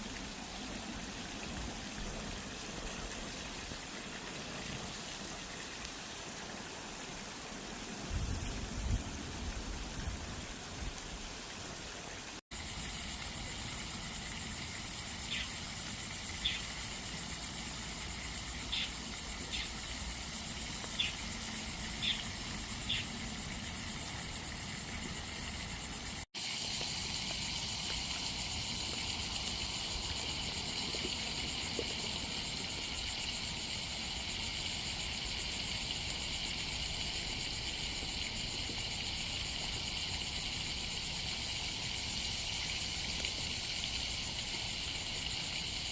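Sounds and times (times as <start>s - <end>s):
high insect buzz: 12.6s - 45.9s.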